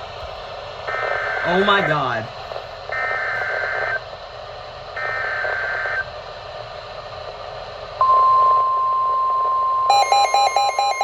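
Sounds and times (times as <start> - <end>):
reception static hiss: 0.0 - 9.5
digital data burst: 0.9 - 2.3
steady warning alarm tone: 0.9 - 4.0, 5.0 - 6.1, 8.0 - 11.0.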